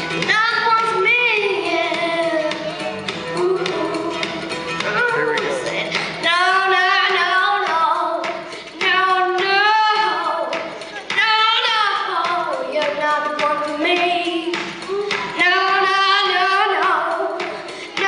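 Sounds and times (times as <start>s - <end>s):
female voice singing: 0.3s - 18.0s
singer breathing: 17.6s - 18.0s.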